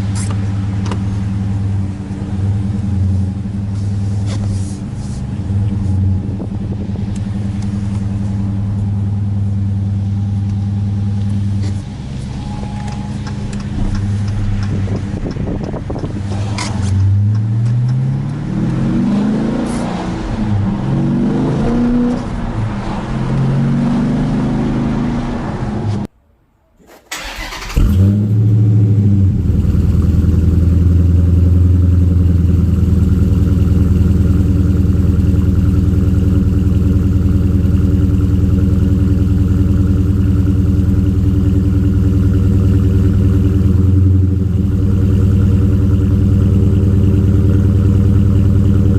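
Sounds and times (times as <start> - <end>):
car engine revving: 0.0 - 26.1, 27.1 - 48.9
deep engine idle: 29.4 - 48.9.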